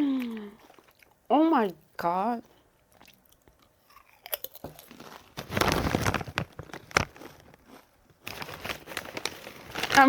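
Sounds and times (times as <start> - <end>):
potato chips crunching and crinkling: 3.0 - 10.0.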